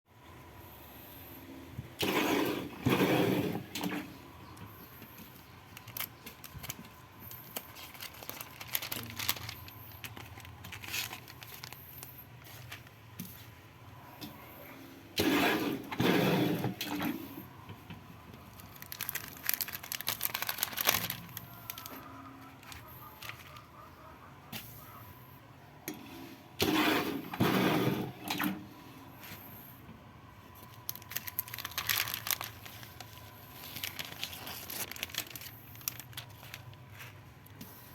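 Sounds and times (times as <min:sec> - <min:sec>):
plastic rustling: 0:02.0 - 0:13.6, 0:18.3 - 0:23.8, 0:30.4 - 0:37.9.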